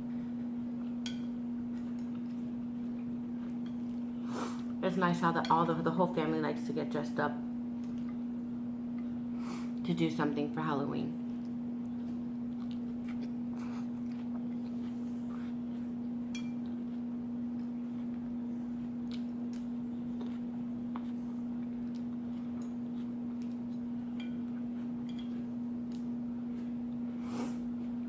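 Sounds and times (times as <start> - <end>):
steady low hum: 0.0 - 28.0
person eating salad crunching: 0.7 - 4.8, 11.3 - 28.0.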